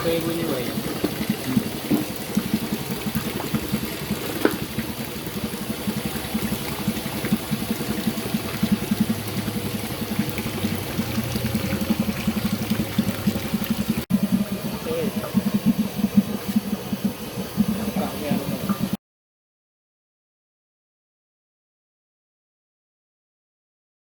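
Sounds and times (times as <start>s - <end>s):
cooking machine pulsing: 0.0s - 19.0s
liquid churning: 0.0s - 19.0s.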